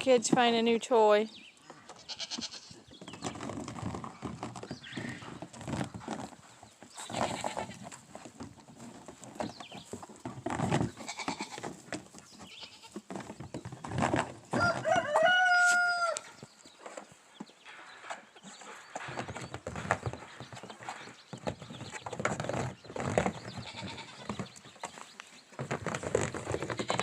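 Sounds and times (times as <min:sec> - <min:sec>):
farmyard animal noises: 0:00.0 - 0:27.0
rooster crowing: 0:14.6 - 0:16.3.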